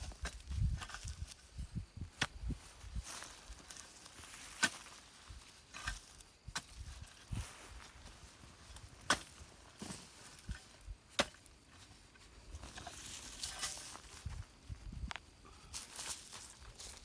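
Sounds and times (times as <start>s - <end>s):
light rustling and scraping: 11.6s - 17.0s.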